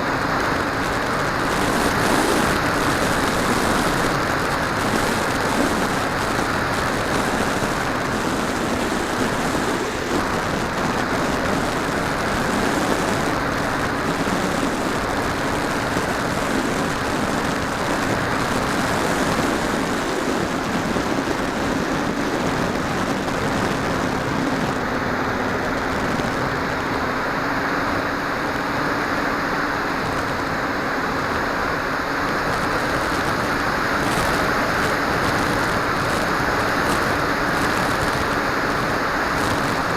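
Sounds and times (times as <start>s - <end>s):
rush of air: 0.0s - 39.9s.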